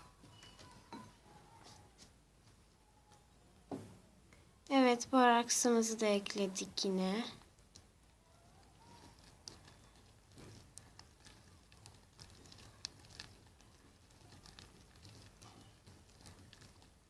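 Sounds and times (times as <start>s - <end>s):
slime clicks and squishes: 7.4s - 17.0s.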